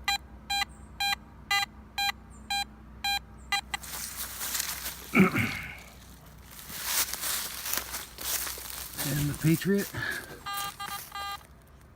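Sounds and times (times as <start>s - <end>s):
rustling: 3.8s - 11.6s
metal detector beeping: 9.1s - 11.5s.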